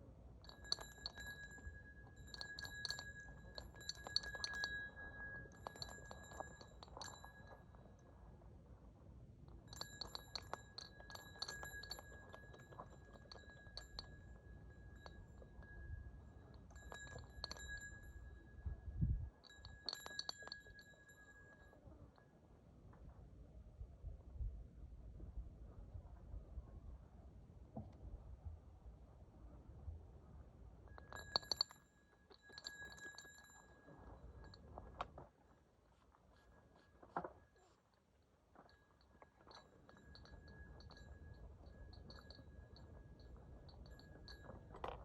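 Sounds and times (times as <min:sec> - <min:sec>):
light clinking clicks with ringing: 0:00.4 - 0:08.2, 0:09.5 - 0:22.3, 0:30.8 - 0:35.3, 0:36.2 - 0:45.0.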